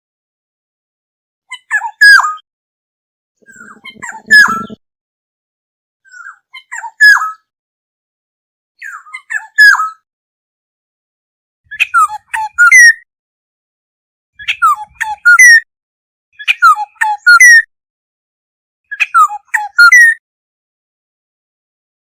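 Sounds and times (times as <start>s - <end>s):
oriole calling: 3.5s - 4.8s.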